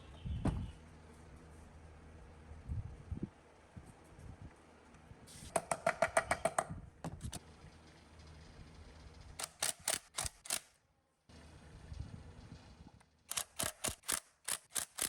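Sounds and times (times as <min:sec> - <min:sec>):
sharp high clicks: 0:09.4 - 0:10.8, 0:13.3 - 0:15.0.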